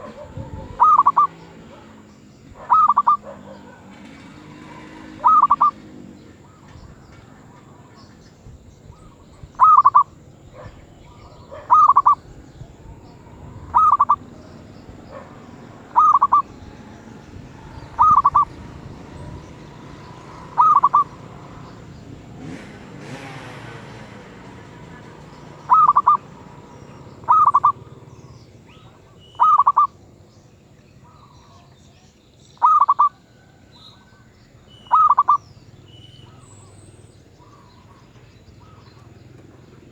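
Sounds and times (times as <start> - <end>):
dove cooing: 0.0 - 8.0, 8.8 - 23.3, 23.9 - 30.0, 32.6 - 34.1, 34.8 - 36.8.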